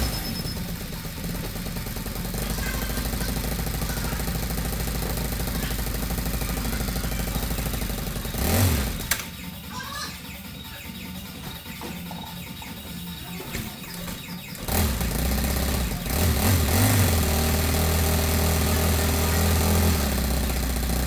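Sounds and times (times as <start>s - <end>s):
engine revving: 0.0s - 9.4s, 14.1s - 21.0s
motorcycle engine idling: 0.0s - 21.0s
click: 9.0s - 9.3s.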